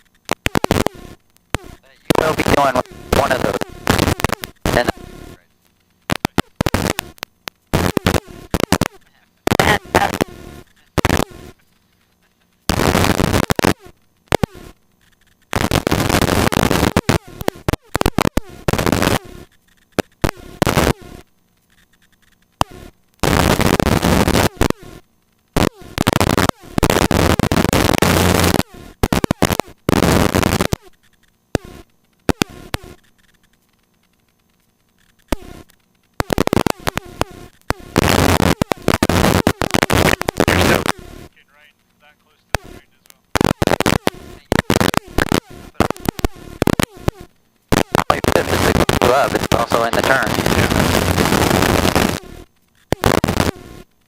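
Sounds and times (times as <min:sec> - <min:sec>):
helicopter cockpit noise: 0:00.0 - 0:23.2, 0:33.0 - 0:52.9.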